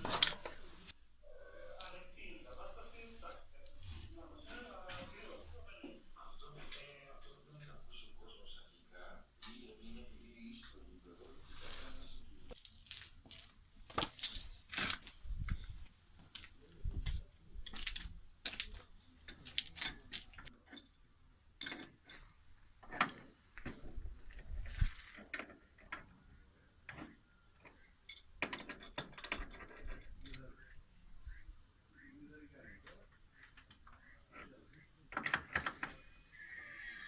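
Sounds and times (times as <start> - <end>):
tools and metal parts clinking: 13.3 - 15.3, 19.1 - 21.0, 21.6 - 26.1, 26.9 - 30.4.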